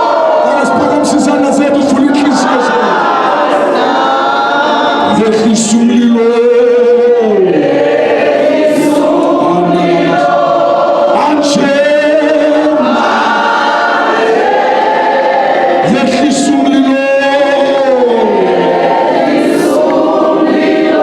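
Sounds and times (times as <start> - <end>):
congregation singing gospel song: 0.0 - 21.0.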